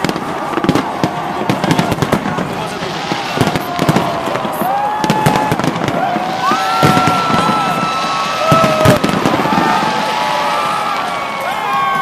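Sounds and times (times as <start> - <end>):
fireworks banging: 0.0 - 12.0
fireworks whistling: 0.0 - 12.0.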